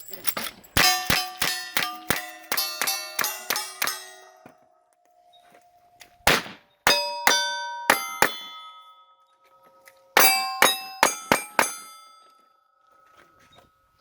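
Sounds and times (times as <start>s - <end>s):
steel targets ringing: 0.1s - 5.1s, 6.7s - 14.0s
gunshots: 6.2s - 7.0s.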